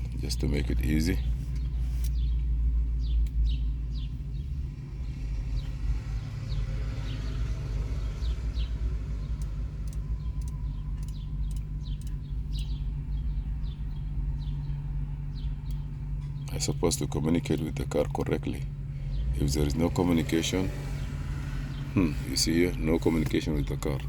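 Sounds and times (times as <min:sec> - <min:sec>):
low machine rumble: 0:00.0 - 0:24.0
bird chirps: 0:01.1 - 0:24.0
sharp clicks: 0:03.2 - 0:03.6, 0:09.2 - 0:12.9.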